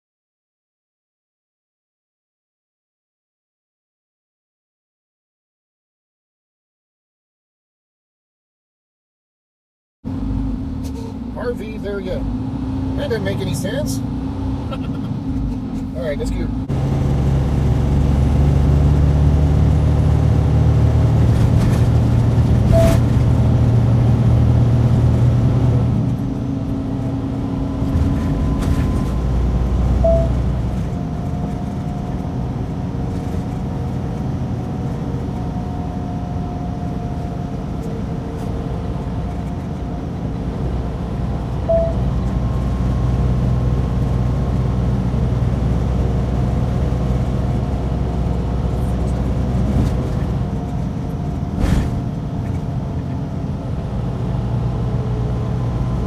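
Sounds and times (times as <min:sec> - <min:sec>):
truck diesel engine and road noise: 0:10.1 - 0:56.0
short high blips: 0:30.0 - 0:30.5, 0:41.7 - 0:42.0.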